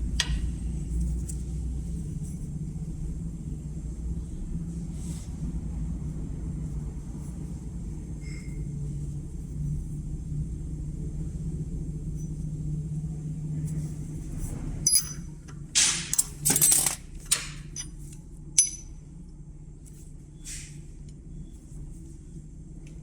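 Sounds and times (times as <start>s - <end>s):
steady low hum: 0.0s - 23.0s
small metal tools clinking: 14.9s - 19.0s.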